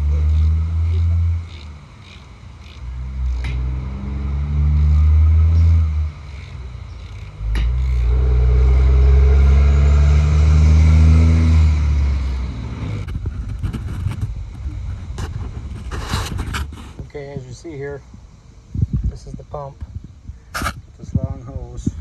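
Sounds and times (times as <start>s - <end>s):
low mechanical drone: 0.0s - 17.1s
sharp click: 20.6s - 20.8s.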